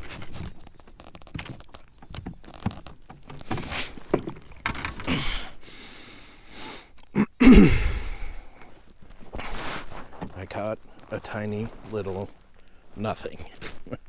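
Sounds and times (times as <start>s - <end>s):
fishing gear knocks and rustles: 0.0s - 5.6s, 8.1s - 14.0s.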